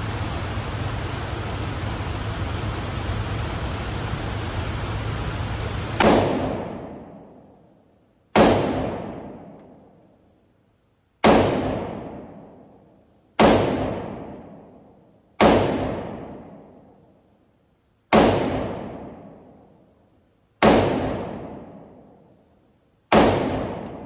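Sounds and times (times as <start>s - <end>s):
steady hiss: 0.0s - 6.1s
rifle gunshots echoing: 6.0s - 7.2s, 8.4s - 9.5s, 11.2s - 12.4s, 13.4s - 14.4s, 18.1s - 19.3s, 20.6s - 21.9s, 23.1s - 24.0s.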